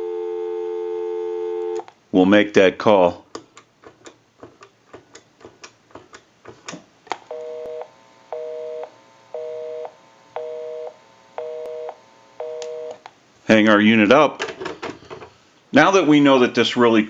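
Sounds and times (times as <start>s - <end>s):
telephone busy signal: 0.0s - 1.8s, 7.3s - 13.0s.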